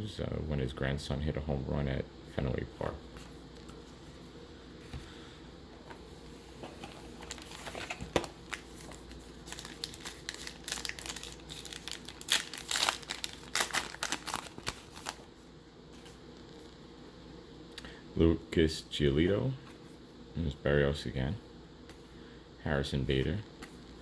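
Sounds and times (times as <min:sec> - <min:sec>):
plastic wrapper crinkling: 0:07.1 - 0:15.3.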